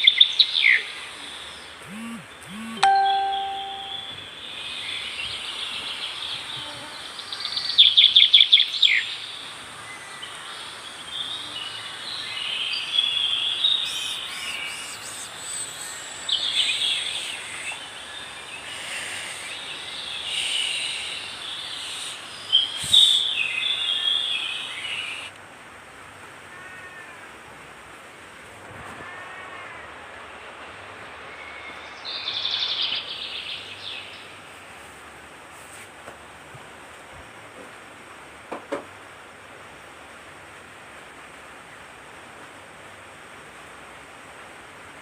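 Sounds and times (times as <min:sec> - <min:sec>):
songbirds singing: 0:00.0 - 0:25.3
high insect drone: 0:08.8 - 0:25.3.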